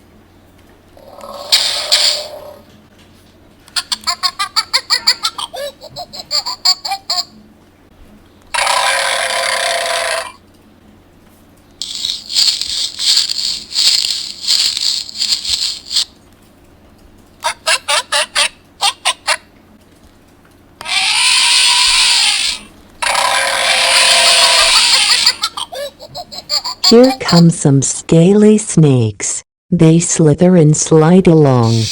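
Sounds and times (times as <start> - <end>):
rapid chattering pulses: 1.0 - 2.6, 8.5 - 10.4, 11.8 - 16.1, 20.8 - 27.0
animal call rising and falling: 8.6 - 10.4, 20.8 - 25.4
hissing burst from small speaker: 11.8 - 16.1
noisy burst: 11.8 - 16.1.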